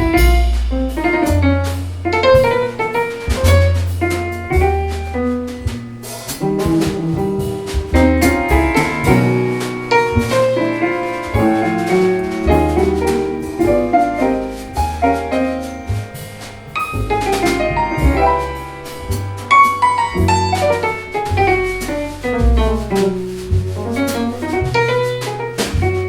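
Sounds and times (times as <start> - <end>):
double bass notes: 0.0 - 26.0
drum kit with cymbals: 0.0 - 26.0.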